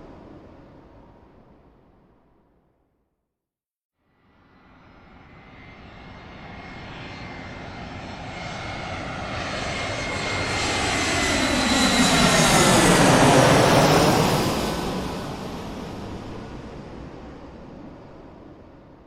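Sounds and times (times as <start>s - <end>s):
airplane flying over: 4.5s - 19.0s.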